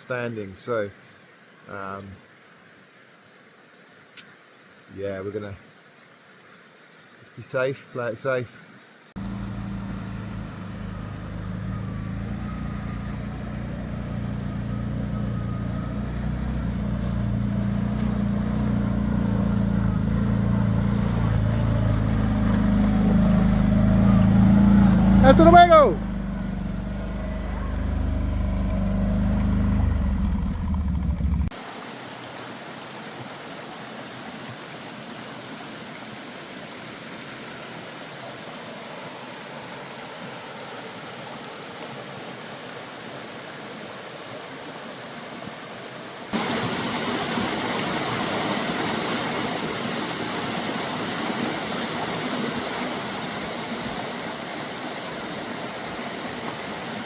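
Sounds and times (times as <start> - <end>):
flowing water rushing: 1.0 - 57.0
vehicle engine running: 9.2 - 31.5, 46.4 - 48.5.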